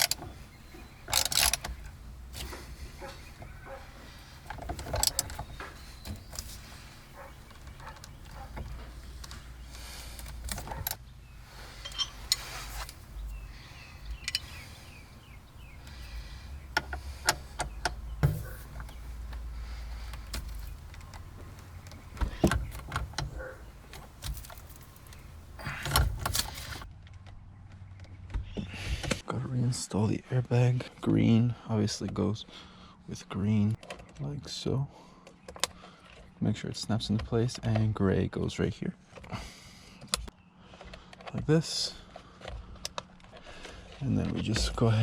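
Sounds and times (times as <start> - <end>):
plastic parts clicking and rattling: 0.0 - 27.4.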